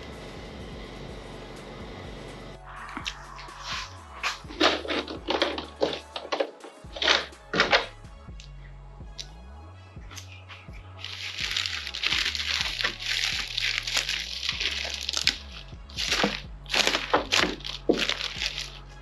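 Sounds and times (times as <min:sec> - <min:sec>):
plastic packaging crinkling: 0:03.7 - 0:07.9, 0:10.1 - 0:19.0.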